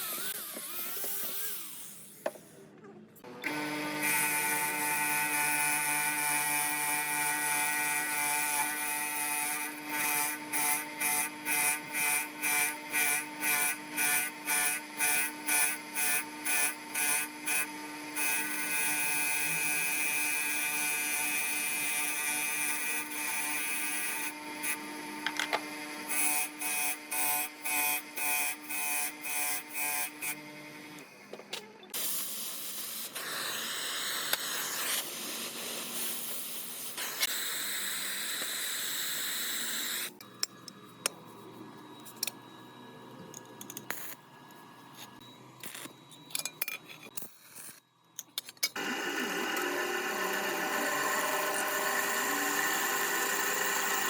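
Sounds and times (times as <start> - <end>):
power tool motor whining: 0.0 - 2.2, 48.8 - 54.0.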